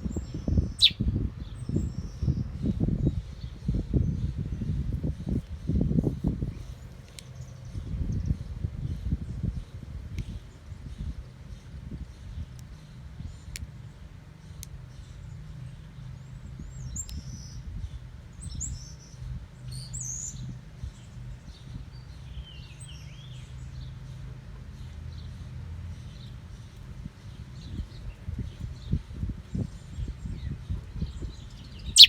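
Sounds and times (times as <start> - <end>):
small birds chirping: 0.8 - 1.0.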